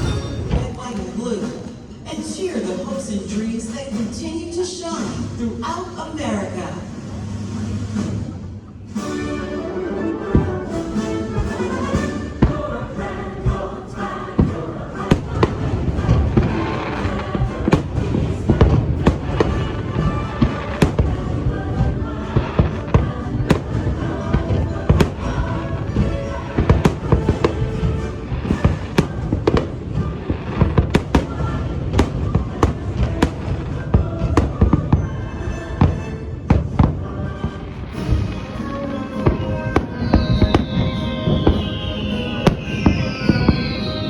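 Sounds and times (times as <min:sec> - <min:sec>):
musical soundtrack: 0:00.0 - 0:03.0, 0:06.9 - 0:44.0
fireworks bangs and pops: 0:14.4 - 0:35.1, 0:37.7 - 0:44.0
falling firework whistles: 0:26.0 - 0:34.5, 0:38.0 - 0:44.0.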